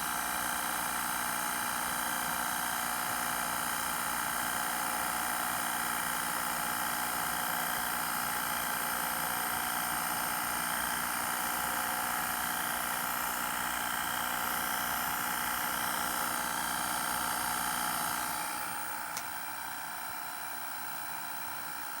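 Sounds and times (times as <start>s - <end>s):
tape recorder motor whine: 8.2s - 21.9s.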